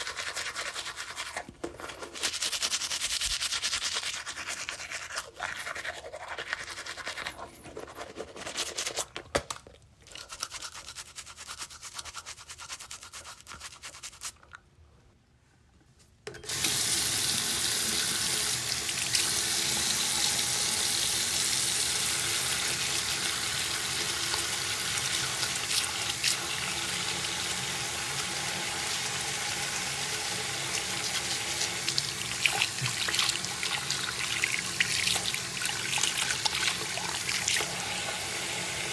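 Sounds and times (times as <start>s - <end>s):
toothbrush scrubbing teeth: 0.0s - 9.2s, 10.0s - 14.6s, 22.5s - 37.8s.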